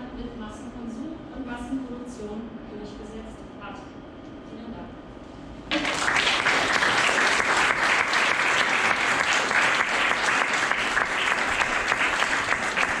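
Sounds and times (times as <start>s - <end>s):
audience applauding: 5.7s - 13.0s.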